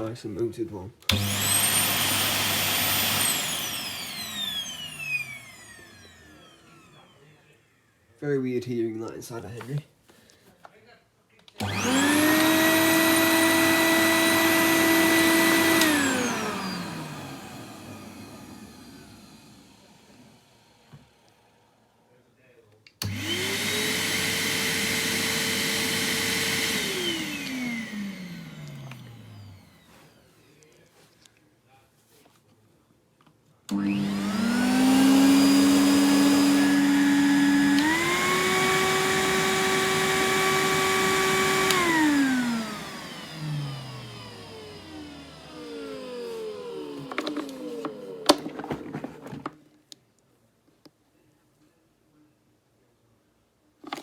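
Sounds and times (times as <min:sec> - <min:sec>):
vacuum cleaner motor whine: 0:01.0 - 0:08.0, 0:11.6 - 0:22.0, 0:23.0 - 0:30.8, 0:33.7 - 0:49.6.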